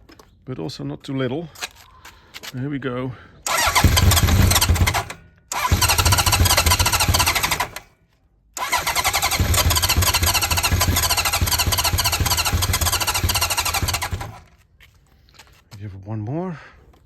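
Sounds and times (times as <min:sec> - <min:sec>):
motorcycle engine cranking: 0:03.5 - 0:07.8, 0:08.6 - 0:14.6.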